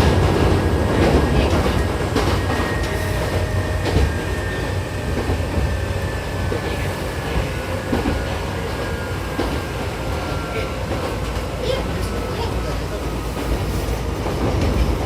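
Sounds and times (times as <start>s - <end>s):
train wheels rumbling on rails: 0.0s - 15.0s.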